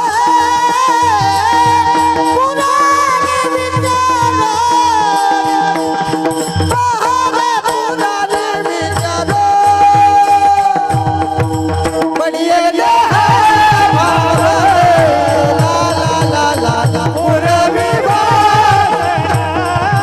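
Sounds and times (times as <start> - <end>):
devotional singing: 0.0 - 20.0
held instrumental notes: 10.8 - 20.0
hand drum beating: 13.1 - 20.0.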